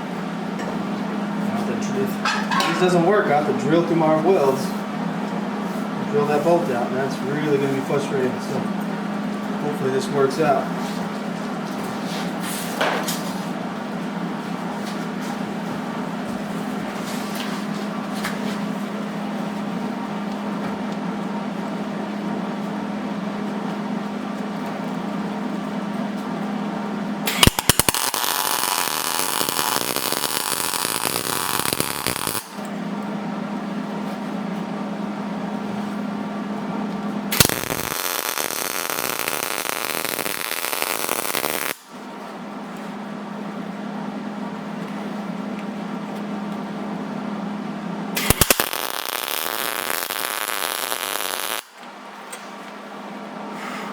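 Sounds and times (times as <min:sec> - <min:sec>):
steady low hum: 0:00.0 - 0:53.9
arc welding crackling buzz: 0:27.2 - 0:32.7, 0:37.3 - 0:42.0, 0:48.2 - 0:51.9.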